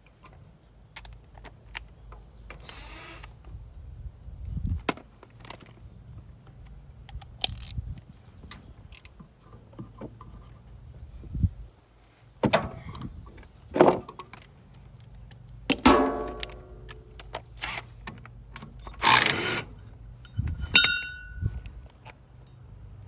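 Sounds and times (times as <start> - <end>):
sharp metal knocks: 15.7 - 17.1, 20.3 - 21.5
ratchet wrench clicking: 18.8 - 20.9.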